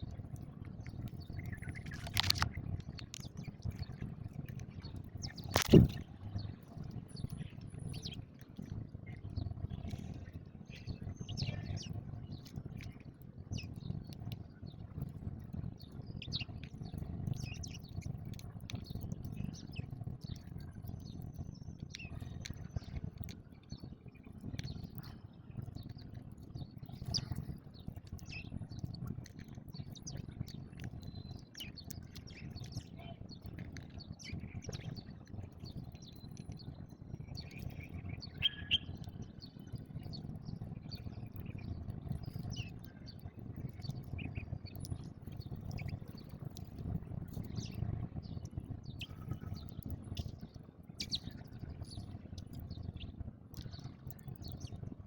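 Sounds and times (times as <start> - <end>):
low background rumble: 0.0 - 55.0
sparrows chirping: 7.0 - 8.2, 10.7 - 13.0, 16.1 - 22.9, 29.8 - 54.8.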